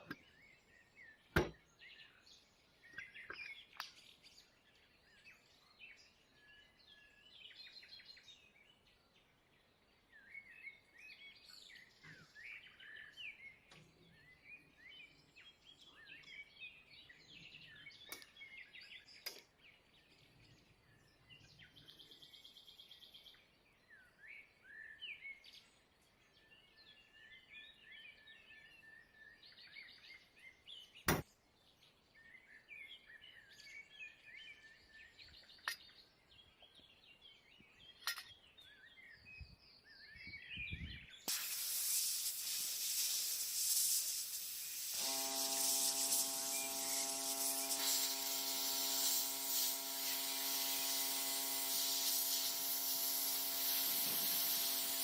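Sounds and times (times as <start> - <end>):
paint spray hissing: 41.3 - 55.0
steady hum: 44.7 - 55.0.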